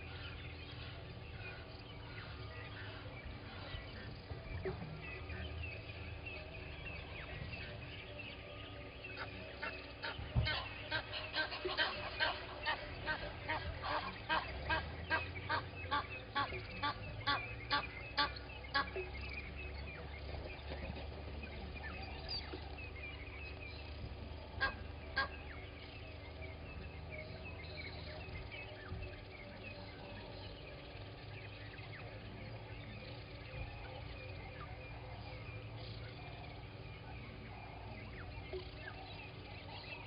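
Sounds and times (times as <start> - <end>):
bird honking: 0.0 - 19.6, 24.2 - 31.2
small birds chirping: 0.0 - 40.0.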